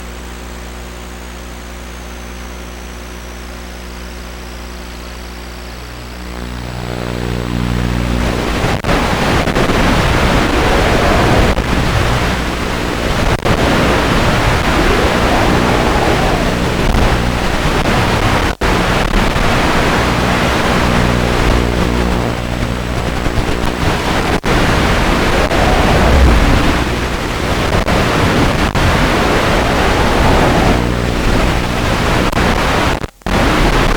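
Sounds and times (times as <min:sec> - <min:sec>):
drone propellers whirring: 0:06.4 - 0:18.4, 0:23.5 - 0:32.3.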